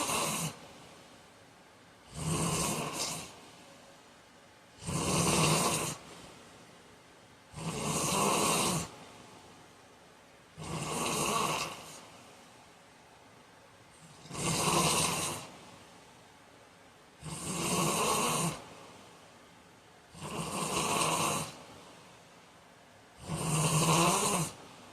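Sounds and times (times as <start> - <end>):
man snoring: 0.0 - 0.6, 2.0 - 3.4, 4.8 - 6.1, 7.5 - 9.0, 10.6 - 12.0, 14.0 - 15.6, 17.2 - 18.7, 20.1 - 21.6, 23.2 - 24.6.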